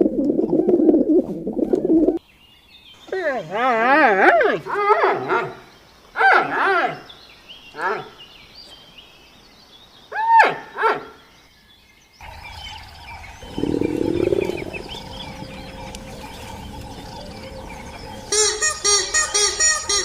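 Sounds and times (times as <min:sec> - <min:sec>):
birds chirping: 0:00.0 - 0:20.0
loud arching animal calls: 0:12.2 - 0:20.0
low rough animal roar: 0:12.5 - 0:18.3.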